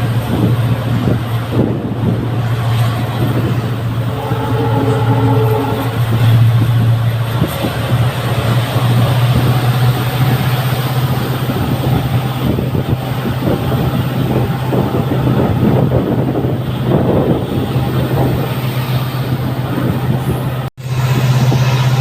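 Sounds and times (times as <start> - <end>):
diesel locomotive engine hum: 0.0 - 22.0
wheels rumbling on rail: 0.0 - 22.0.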